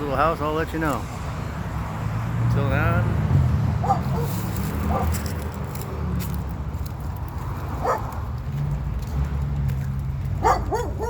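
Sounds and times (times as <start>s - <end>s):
dog barking: 3.8s - 5.2s, 7.8s - 8.2s, 10.4s - 11.0s.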